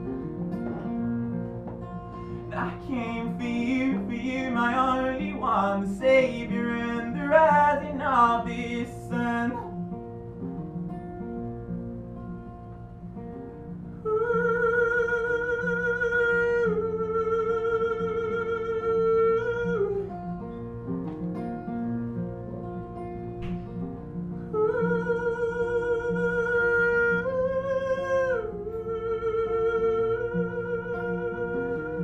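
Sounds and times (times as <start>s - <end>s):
acoustic guitar chords: 0.0s - 32.0s
person singing wordless notes: 2.5s - 9.7s.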